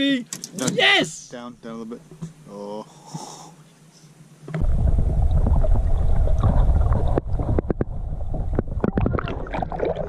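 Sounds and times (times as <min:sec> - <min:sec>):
wind buffeting microphone: 0:04.6 - 0:09.1.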